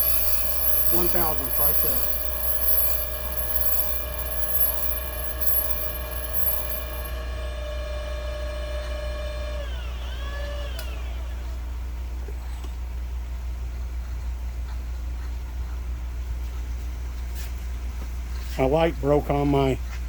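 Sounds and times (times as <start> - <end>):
grinding machine motor whine: 0.0 - 14.0
low electrical hum: 0.0 - 20.0.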